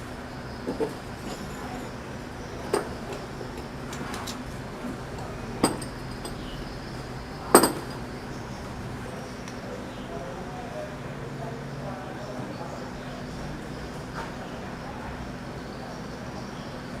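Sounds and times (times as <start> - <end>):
metal parts clinking: 5.2 - 6.5.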